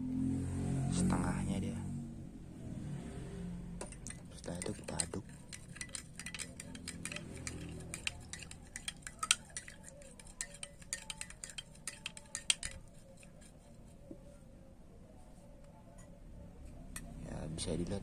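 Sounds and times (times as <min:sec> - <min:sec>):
spoon clinking against glass: 0:03.8 - 0:13.3.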